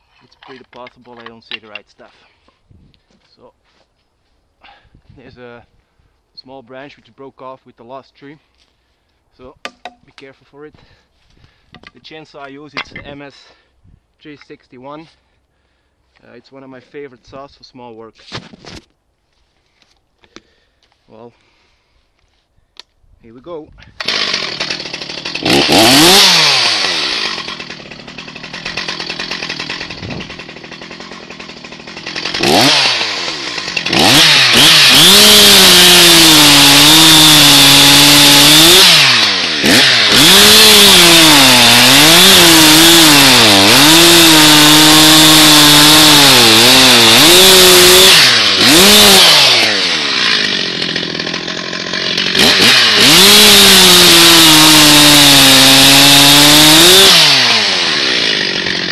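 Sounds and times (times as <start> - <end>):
chainsaw revving and cutting wood: 23.8 - 58.9.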